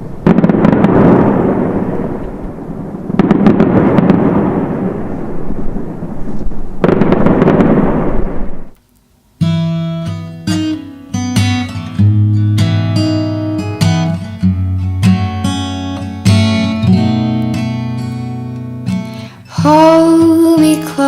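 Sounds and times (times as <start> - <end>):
fireworks barrage: 0.0 - 8.8
acoustic guitar music: 9.4 - 21.0.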